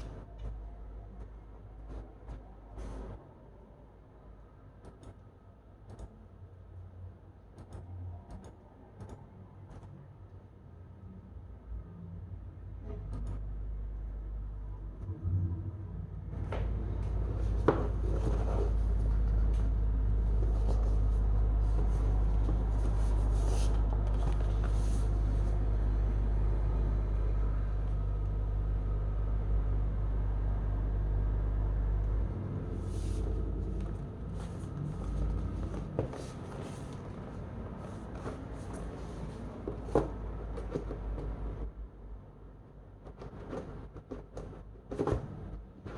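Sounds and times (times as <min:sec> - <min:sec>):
steady low rumble: 0:13.8 - 0:42.7.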